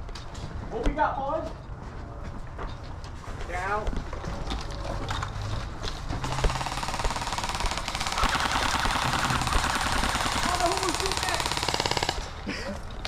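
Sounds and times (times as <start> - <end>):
airsoft gun automatic fire: 6.2 - 12.4.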